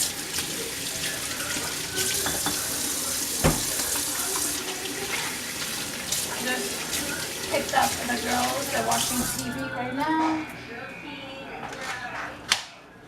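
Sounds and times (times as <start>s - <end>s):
faucet running into sink: 0.0s - 9.6s
knock: 3.4s - 3.7s.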